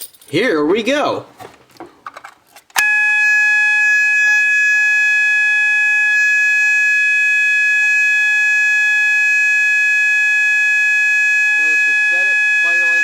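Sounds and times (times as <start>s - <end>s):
fire alarm steady high tone: 2.8s - 13.0s.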